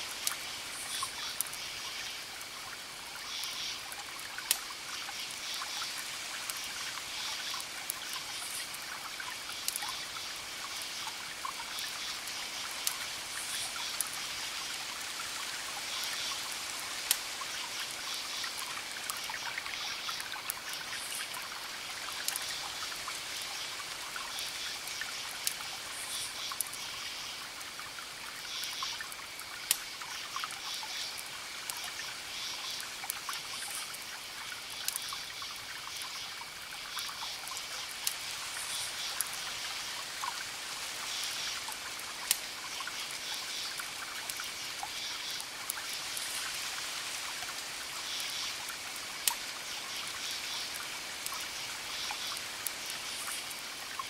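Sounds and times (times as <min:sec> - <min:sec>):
trickling hiss: 0:00.0 - 0:54.0
wood fire crackling and popping: 0:04.4 - 0:04.7, 0:09.6 - 0:09.8, 0:12.8 - 0:13.0, 0:22.2 - 0:22.4, 0:24.8 - 0:25.8, 0:29.3 - 0:29.9, 0:34.8 - 0:35.1, 0:37.9 - 0:38.3, 0:42.2 - 0:42.5.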